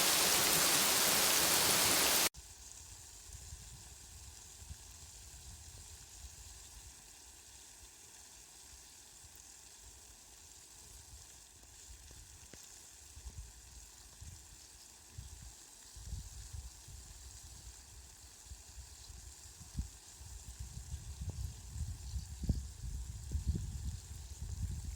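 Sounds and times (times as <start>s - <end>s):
rain falling: 0.0s - 2.3s.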